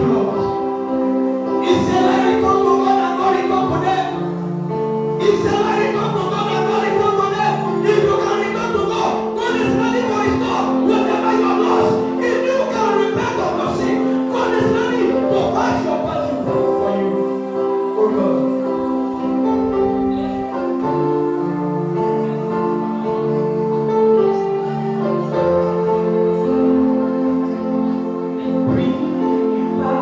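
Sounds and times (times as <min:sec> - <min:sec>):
voices singing: 0:00.0 - 0:23.4
sustained keyboard chords: 0:00.0 - 0:30.0.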